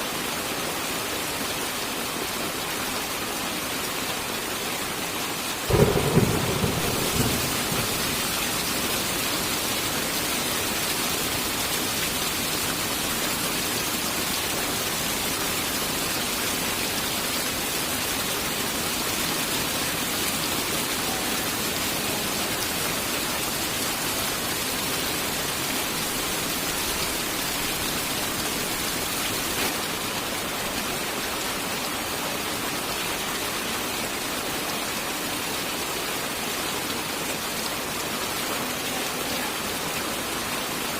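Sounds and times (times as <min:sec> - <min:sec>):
heavy rain falling: 0:00.0 - 0:40.9
thunder rumble: 0:05.7 - 0:09.8.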